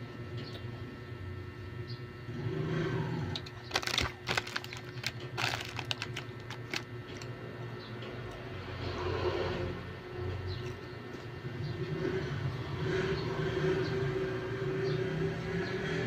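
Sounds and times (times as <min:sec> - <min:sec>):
low steady hum: 0:00.0 - 0:12.8
crackers crunching when chewed: 0:03.3 - 0:07.4.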